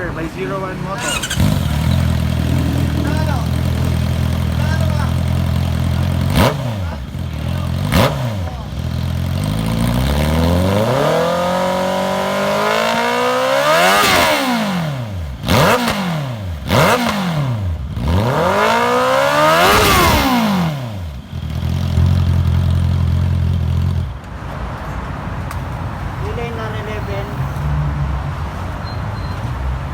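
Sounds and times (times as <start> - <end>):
motorcycle engine revving: 0.9 - 24.2.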